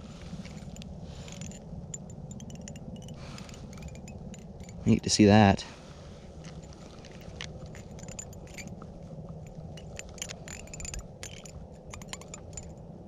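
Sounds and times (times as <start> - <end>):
low steady rumble: 0.0 - 13.0
fishing reel clicks and scrapes: 0.4 - 4.9, 6.5 - 8.8, 9.5 - 12.7.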